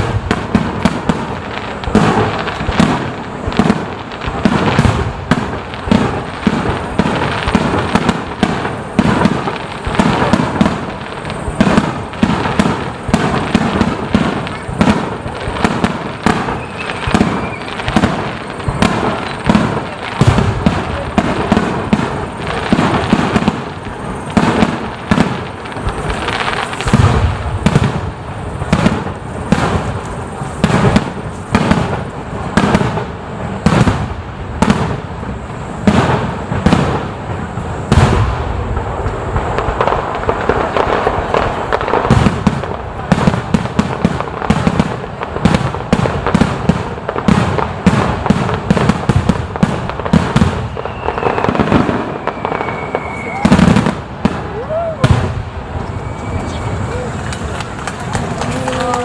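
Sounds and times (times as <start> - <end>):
fireworks shells bursting: 0.0 - 34.0, 34.7 - 59.0
fireworks crackle: 0.0 - 59.0
heavy fireworks booms: 0.0 - 59.0.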